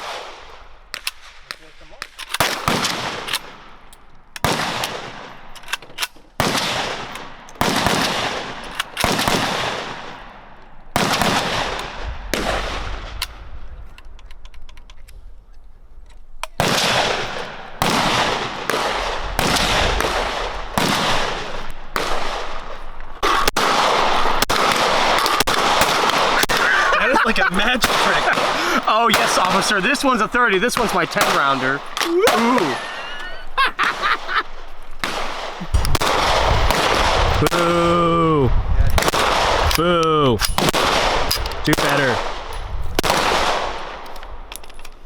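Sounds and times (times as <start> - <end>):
loud echoing gunshots: 0.0 - 5.5, 6.4 - 13.7, 16.6 - 44.1
faint distant gunshots: 16.6 - 22.6, 35.0 - 37.9.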